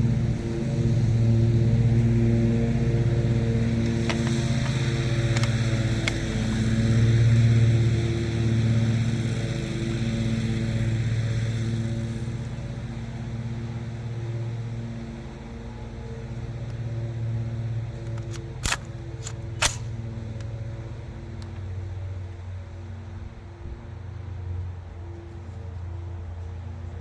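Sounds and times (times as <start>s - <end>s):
engine running steadily: 0.0s - 27.0s
short sharp clicks: 18.2s - 19.9s.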